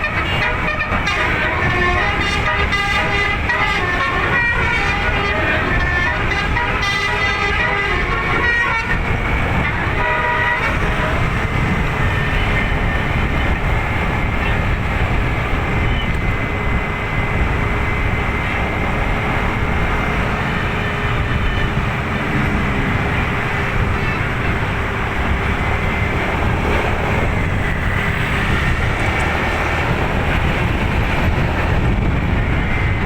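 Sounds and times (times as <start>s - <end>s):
musical bus horn melody: 0.0s - 13.7s, 18.4s - 28.8s
vehicle and road noise: 0.0s - 33.0s.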